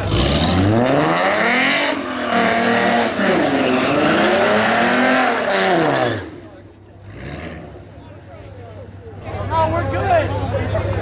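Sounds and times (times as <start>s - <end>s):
car engine revving hard: 0.0s - 7.9s.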